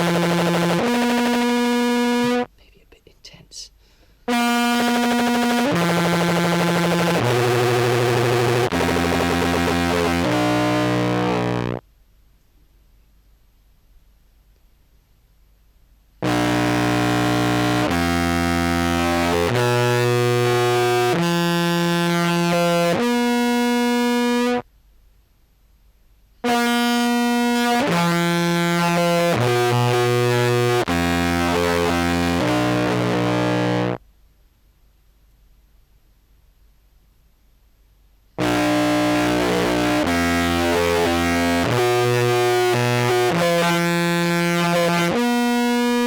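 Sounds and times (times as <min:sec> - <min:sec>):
distorted contrabass clarinet notes: 0:00.0 - 0:02.5, 0:04.3 - 0:11.8, 0:16.2 - 0:24.6, 0:26.5 - 0:34.0, 0:38.4 - 0:46.0.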